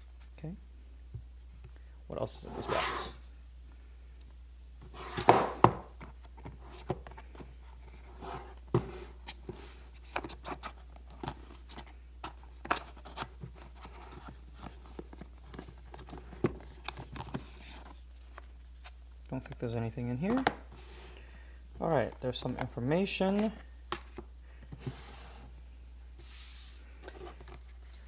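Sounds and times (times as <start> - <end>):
cardboard packaging rustling: 21.8 - 25.6.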